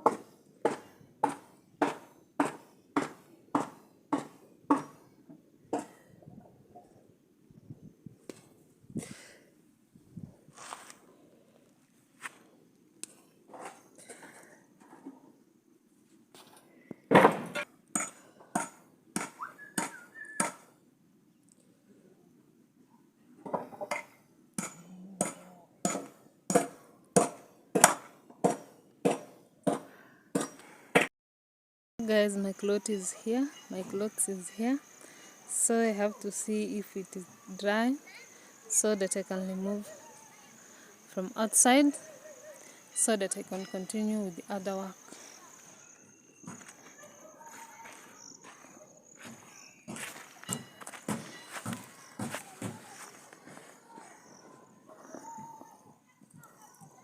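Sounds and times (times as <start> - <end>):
sharp metallic knocks: 0.0 - 5.0, 23.6 - 30.6.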